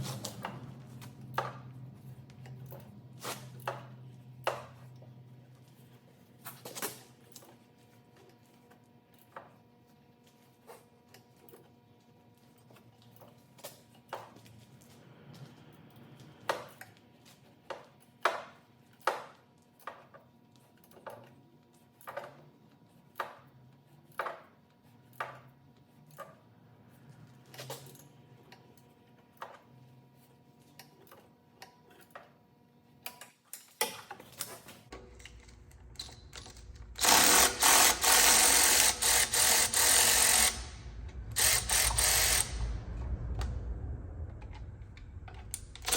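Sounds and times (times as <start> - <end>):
power tool running: 36.6 - 43.6, 45.4 - 45.9.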